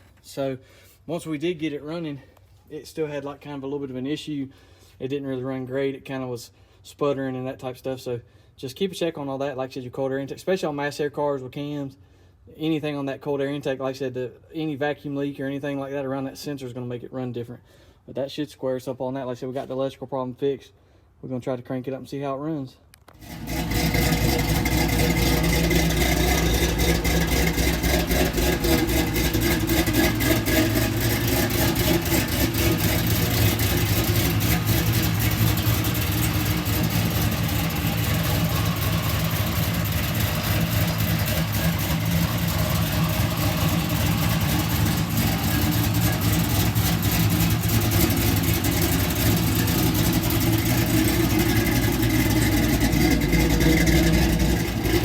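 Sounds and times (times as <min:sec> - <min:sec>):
car engine idling: 0:23.2 - 0:55.0.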